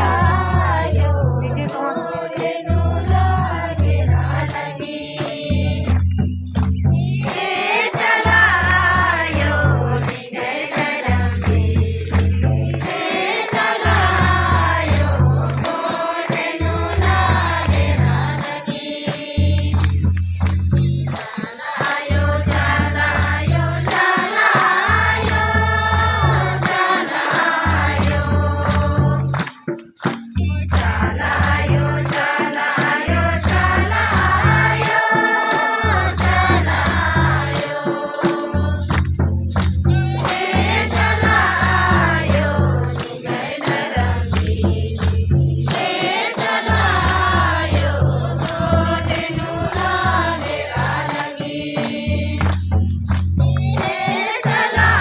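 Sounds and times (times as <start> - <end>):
repeating drum beat: 0.0 - 55.0
shaker ticking: 0.0 - 55.0
voices singing folk song: 0.0 - 55.0.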